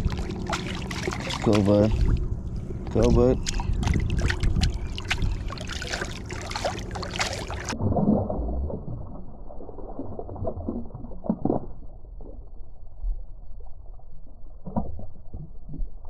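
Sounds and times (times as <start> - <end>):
water splashing: 0.0 - 11.7
underwater gurgling: 0.0 - 12.4.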